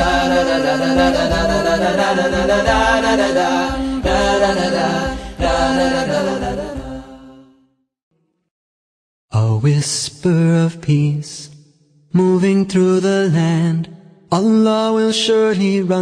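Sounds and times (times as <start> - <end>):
held vocal drone: 0.0 - 7.6
voices chanting a cappella: 0.0 - 7.6.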